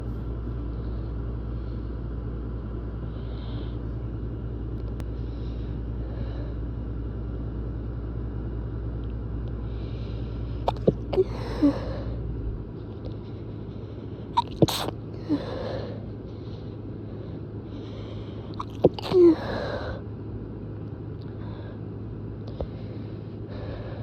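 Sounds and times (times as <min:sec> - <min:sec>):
low rumbling hum: 0:00.0 - 0:24.0
person stifling a sneeze: 0:10.7 - 0:11.3, 0:14.4 - 0:15.0, 0:18.6 - 0:19.4.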